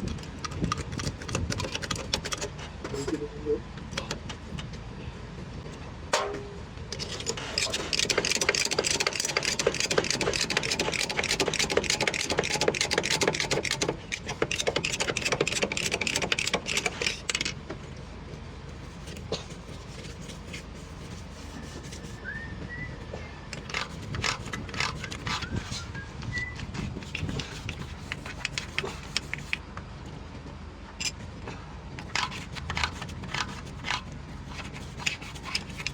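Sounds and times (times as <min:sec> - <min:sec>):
tools clicking and knocking: 0:00.0 - 0:03.2, 0:06.2 - 0:17.6, 0:23.5 - 0:25.9, 0:26.8 - 0:29.6, 0:32.0 - 0:35.9
wrench metallic clatter: 0:06.9 - 0:17.6, 0:23.5 - 0:26.0, 0:26.8 - 0:29.6, 0:32.0 - 0:35.9.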